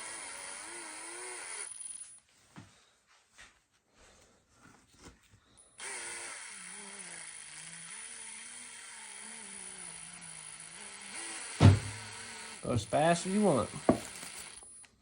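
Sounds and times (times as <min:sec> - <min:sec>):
power drill motor humming: 0:00.0 - 0:02.1, 0:05.7 - 0:14.8.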